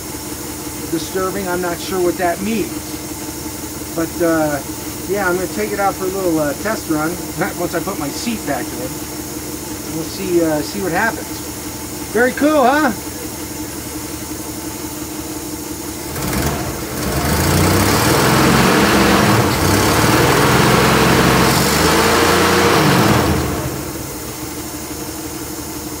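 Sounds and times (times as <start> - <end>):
engine idling and revving: 0.0 - 26.0.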